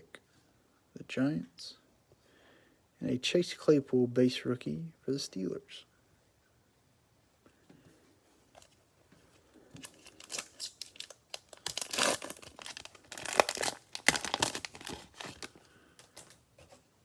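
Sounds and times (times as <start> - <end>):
plastic wrapper tearing and crinkling: 9.8 - 16.4.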